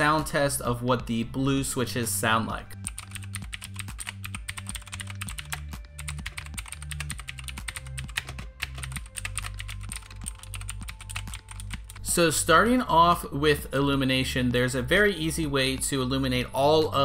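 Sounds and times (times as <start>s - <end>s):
quiet background music: 0.0s - 17.0s
mechanical keyboard typing: 2.9s - 12.1s.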